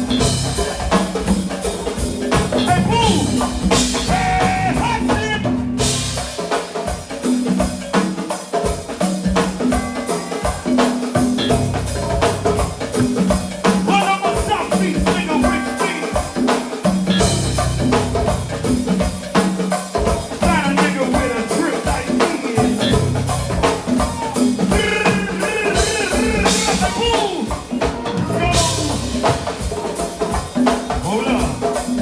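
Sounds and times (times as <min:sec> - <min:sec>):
live band music: 0:00.0 - 0:32.0
person singing: 0:02.6 - 0:05.7, 0:13.8 - 0:16.7, 0:20.4 - 0:29.2.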